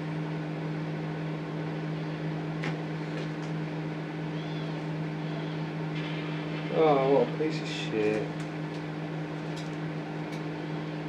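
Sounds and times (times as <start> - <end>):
microwave oven humming: 0.0 - 11.0.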